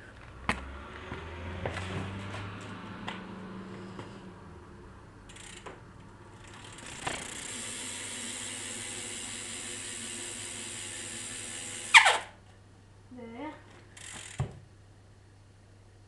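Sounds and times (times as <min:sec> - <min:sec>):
bicycle hub freewheeling tick: 0:05.3 - 0:12.2, 0:14.0 - 0:14.4.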